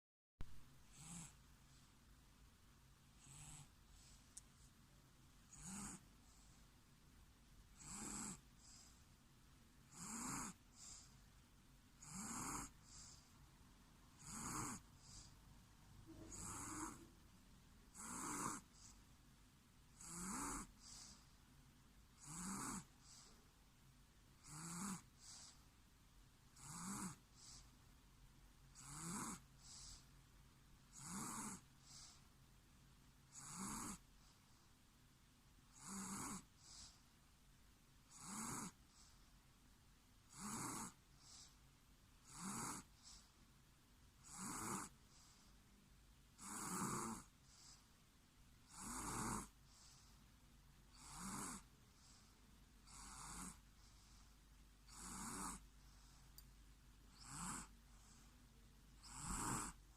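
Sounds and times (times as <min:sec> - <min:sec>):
person snoring: 0:00.9 - 0:01.4, 0:03.2 - 0:04.1, 0:05.5 - 0:06.0, 0:07.8 - 0:08.9, 0:09.9 - 0:11.0, 0:12.0 - 0:13.2, 0:14.2 - 0:15.3, 0:16.1 - 0:17.1, 0:17.9 - 0:19.0, 0:20.0 - 0:21.2, 0:22.2 - 0:23.3, 0:24.4 - 0:25.5, 0:26.6 - 0:27.6, 0:28.7 - 0:30.0, 0:30.9 - 0:32.2, 0:33.3 - 0:34.0, 0:35.8 - 0:36.9, 0:38.1 - 0:38.8, 0:40.3 - 0:41.0, 0:42.2 - 0:42.9, 0:44.2 - 0:44.9, 0:46.4 - 0:47.3, 0:48.6 - 0:49.5, 0:50.9 - 0:51.7, 0:52.9 - 0:53.6, 0:54.9 - 0:55.6, 0:57.1 - 0:58.2, 0:59.0 - 0:59.8.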